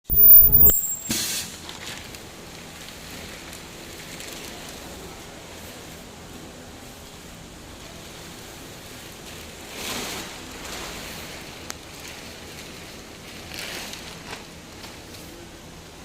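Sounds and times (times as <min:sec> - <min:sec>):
welding machine hissing bursts: 0:00.1 - 0:01.6.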